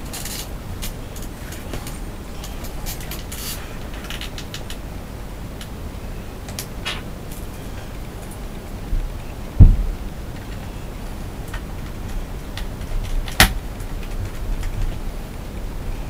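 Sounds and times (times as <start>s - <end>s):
light clicks and scrapes of parts: 0.0s - 4.8s
loud low thump: 9.6s - 10.0s.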